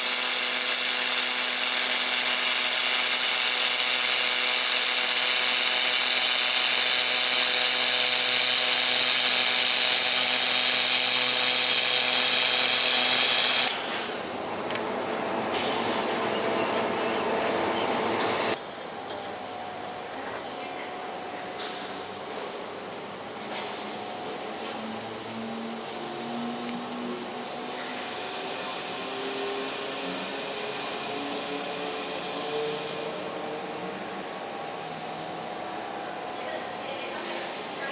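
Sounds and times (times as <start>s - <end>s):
laser welder hissing: 0.0s - 14.3s.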